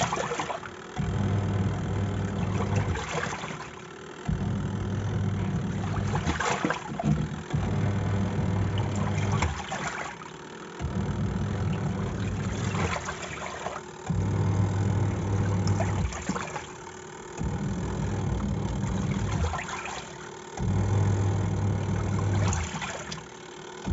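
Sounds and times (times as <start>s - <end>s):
washing machine motor humming: 0.0s - 23.9s
water and clothes sloshing: 0.0s - 23.9s.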